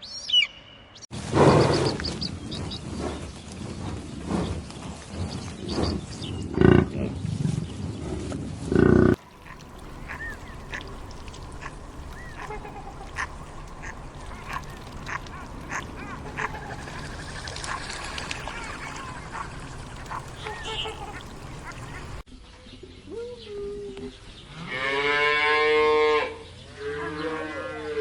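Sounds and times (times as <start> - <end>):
loud animal calls: 9.2 - 22.2.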